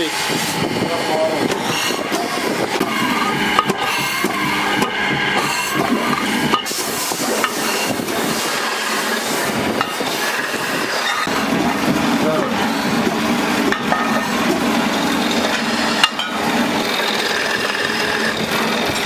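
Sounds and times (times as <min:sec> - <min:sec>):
machinery hum: 0:00.0 - 0:19.0
metal scraping and rubbing: 0:01.4 - 0:19.0
sharp clicks and knocks: 0:01.5 - 0:08.0, 0:15.4 - 0:16.4.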